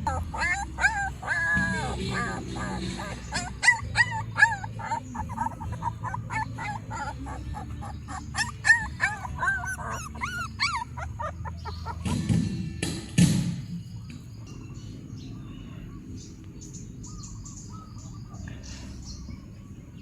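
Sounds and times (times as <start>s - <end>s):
dogs whining and yipping: 0.0s - 12.6s.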